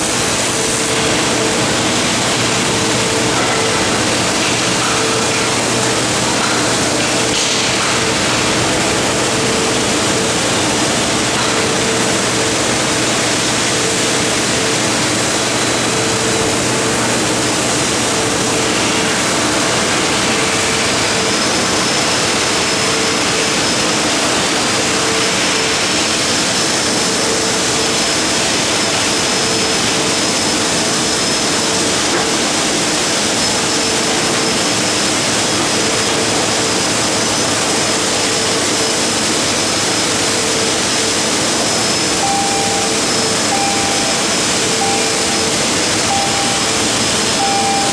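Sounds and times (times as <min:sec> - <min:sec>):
welding arc hissing: 0:00.0 - 0:19.5
faint hum: 0:42.0 - 0:47.9.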